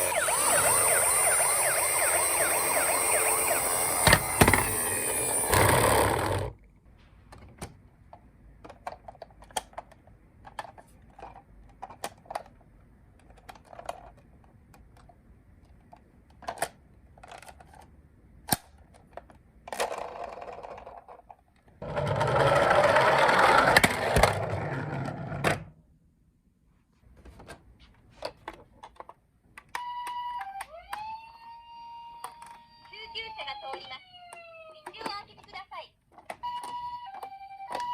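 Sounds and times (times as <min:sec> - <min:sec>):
toy electronic siren: 0:00.0 - 0:06.4, 0:29.7 - 0:34.9, 0:36.4 - 0:37.9.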